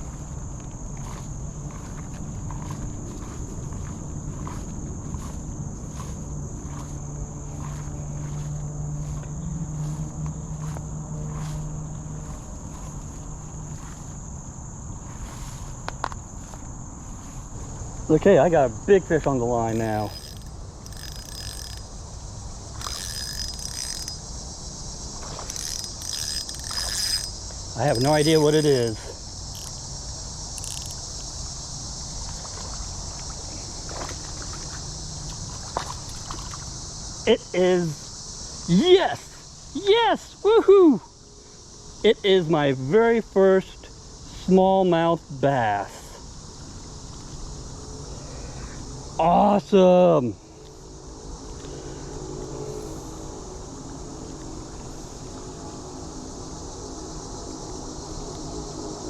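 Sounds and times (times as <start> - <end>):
insects chirring: 0.0 - 59.0
faint ticks: 19.9 - 21.9, 22.8 - 24.2, 25.2 - 27.6, 29.5 - 29.8, 30.6 - 31.3.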